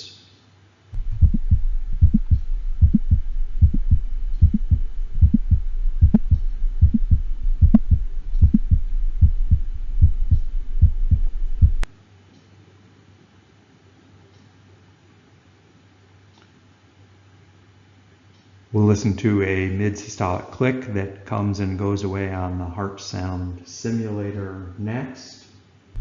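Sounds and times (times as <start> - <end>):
low steady hum: 0.0 - 24.9
heartbeats: 1.0 - 11.9.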